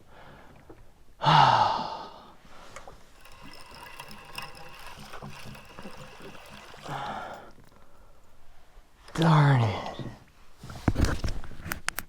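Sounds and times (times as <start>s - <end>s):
fishing reel ticking and whirring: 2.6s - 8.6s.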